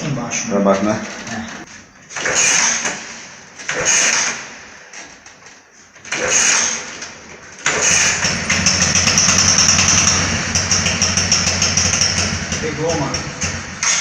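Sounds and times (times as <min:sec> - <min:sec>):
scooter kick-start pedal: 0:07.6 - 0:14.0
scooter engine idling: 0:07.9 - 0:14.0.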